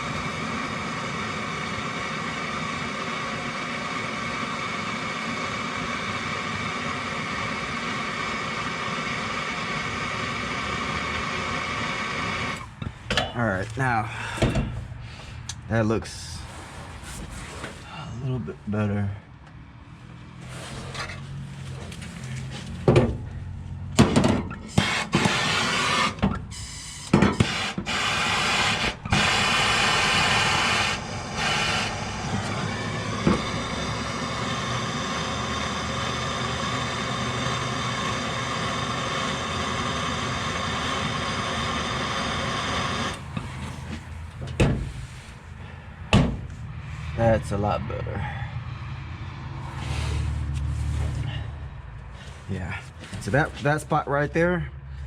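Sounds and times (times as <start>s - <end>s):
gas torch flame hissing: 0.0s - 12.7s, 24.6s - 43.8s.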